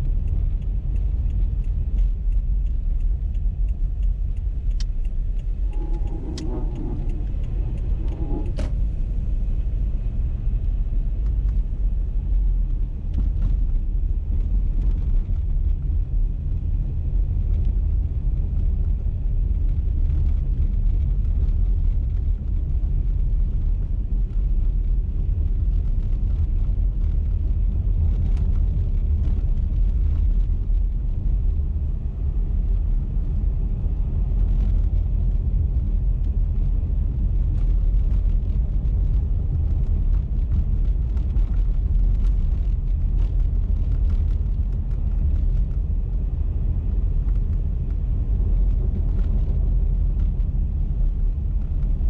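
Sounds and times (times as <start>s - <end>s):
car tyres and engine rumble: 0.0s - 52.0s.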